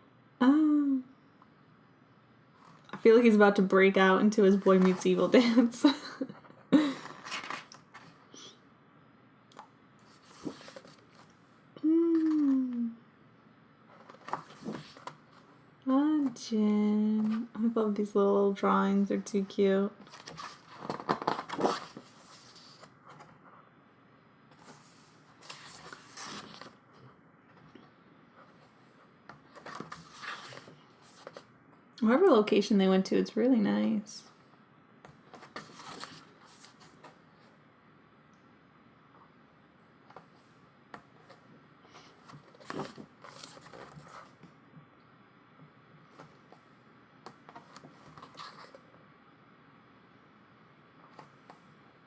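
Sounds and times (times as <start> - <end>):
woman humming aww: 0.4 - 1.2, 11.8 - 13.1
paper pages rustling: 4.5 - 5.7, 7.0 - 8.2, 10.0 - 11.4, 13.9 - 15.5, 20.0 - 23.4, 24.5 - 26.8, 29.4 - 31.5, 35.3 - 37.5, 41.2 - 44.5, 47.3 - 48.9.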